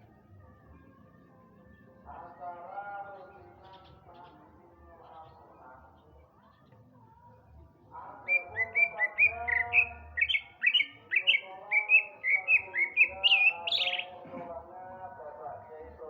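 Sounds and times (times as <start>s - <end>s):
bird whistling song: 8.3s - 14.2s.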